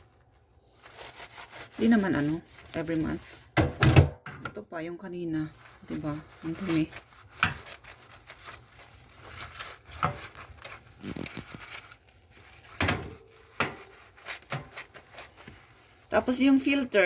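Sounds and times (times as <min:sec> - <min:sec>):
light rubbing: 0:05.5 - 0:16.1.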